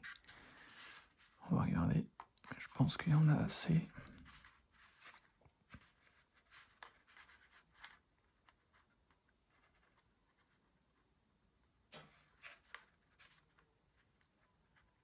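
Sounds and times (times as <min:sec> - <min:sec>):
hands tapping and rubbing small parts: 0:02.1 - 0:09.9.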